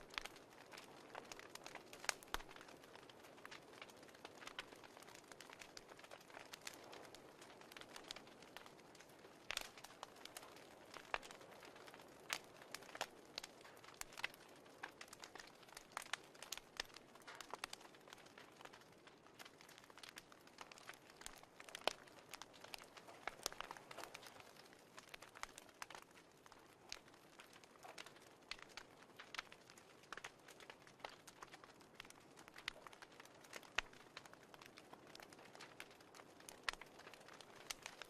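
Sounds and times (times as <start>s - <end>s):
soft steady hiss: 0.0s - 38.0s
wood fire crackling: 0.0s - 38.0s.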